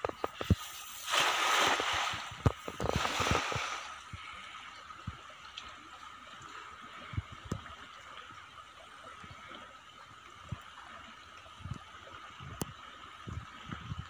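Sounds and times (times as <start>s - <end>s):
net splashing into water: 0.6s - 4.0s.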